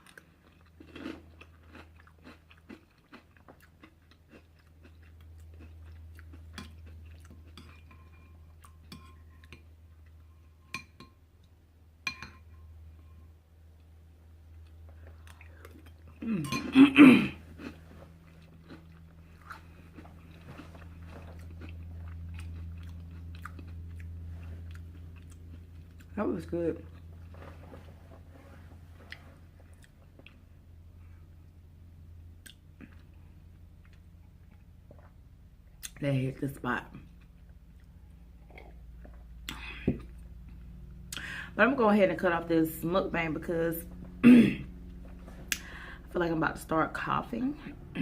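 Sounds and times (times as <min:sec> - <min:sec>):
person chewing and crunching food: 0:00.0 - 0:10.7, 0:13.7 - 0:27.9, 0:28.5 - 0:31.5, 0:32.4 - 0:36.0, 0:36.9 - 0:41.3.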